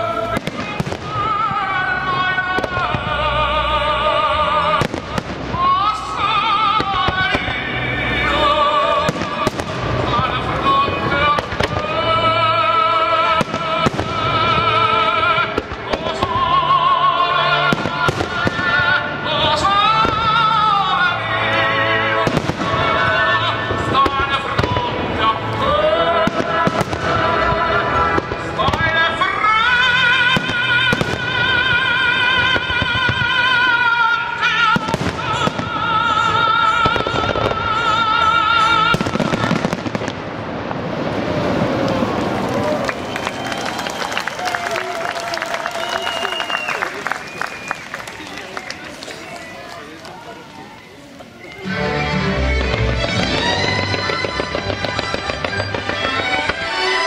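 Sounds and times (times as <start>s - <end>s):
music: 0.0s - 39.9s, 51.5s - 57.0s
fireworks bangs: 0.0s - 51.7s, 52.4s - 57.0s
operatic singing with vibrato: 0.0s - 57.0s.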